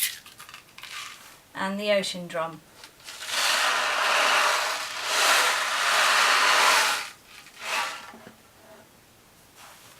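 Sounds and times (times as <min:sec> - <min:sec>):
ocean drum beads rolling: 0:00.0 - 0:01.3, 0:03.0 - 0:08.1.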